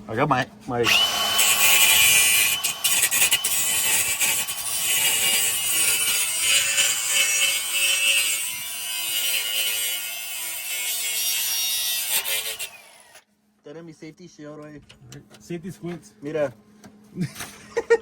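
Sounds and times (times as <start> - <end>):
angle grinder grinding metal: 0.8 - 13.2.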